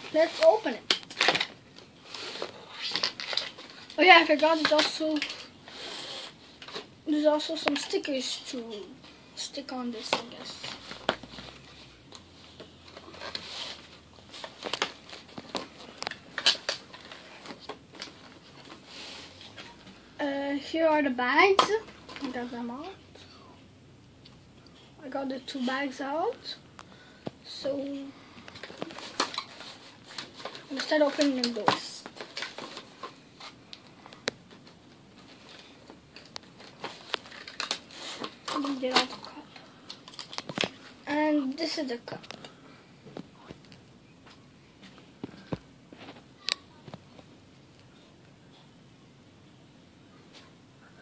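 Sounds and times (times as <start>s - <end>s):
plastic packaging crinkling: 28.5s - 33.1s, 34.2s - 41.1s.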